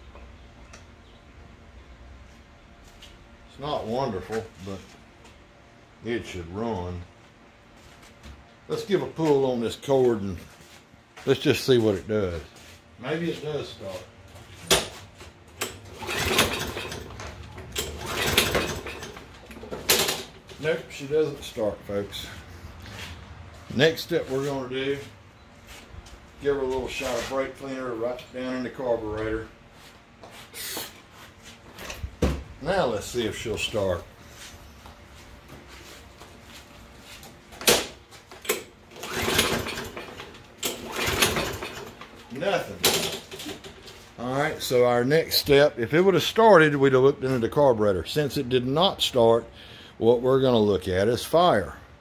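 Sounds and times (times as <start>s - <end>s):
recoil starter pulled: 15.6s - 20.4s, 38.4s - 42.0s
mower engine turning over: 15.6s - 20.7s, 38.4s - 42.0s.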